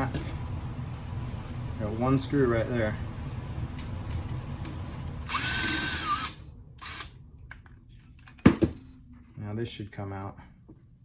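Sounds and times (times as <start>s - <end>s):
electric screwdriver whining: 5.2s - 7.1s.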